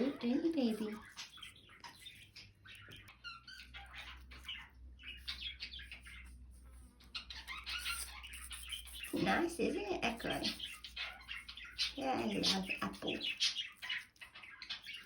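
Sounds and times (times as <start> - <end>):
parakeet chirping: 0.0 - 15.0
beak clicks: 0.7 - 3.6.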